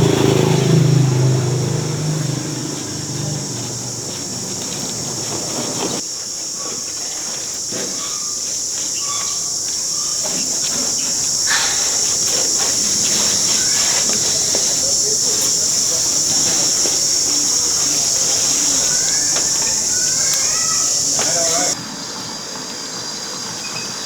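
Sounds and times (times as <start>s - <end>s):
high-pitched insect drone: 8.0s - 21.8s.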